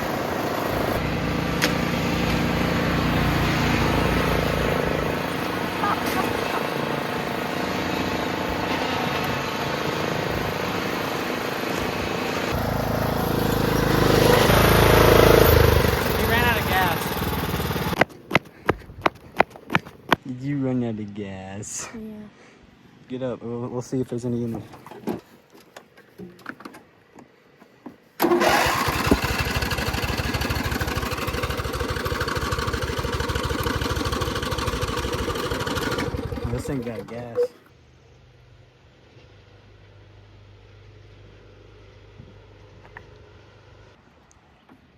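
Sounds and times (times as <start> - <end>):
riding lawnmower engine running: 0.0 - 18.4, 28.2 - 37.7.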